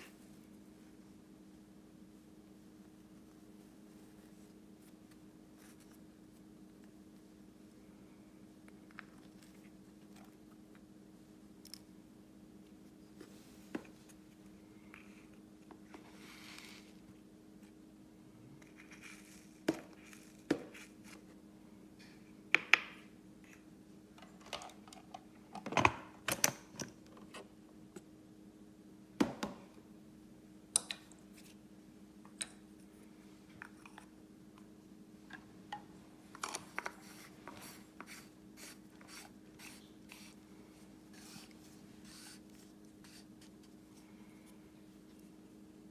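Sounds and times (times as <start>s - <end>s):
steady low hum: 27.4s - 45.9s.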